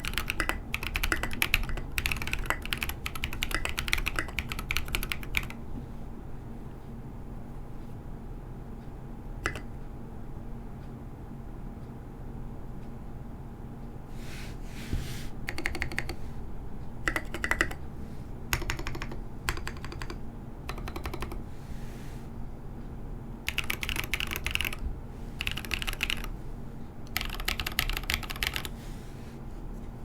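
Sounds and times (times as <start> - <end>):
mechanical keyboard typing: 0.0 - 5.6, 9.4 - 9.7, 15.5 - 16.2, 17.0 - 17.8, 18.5 - 21.4, 23.5 - 24.8, 25.4 - 26.3, 27.1 - 28.7.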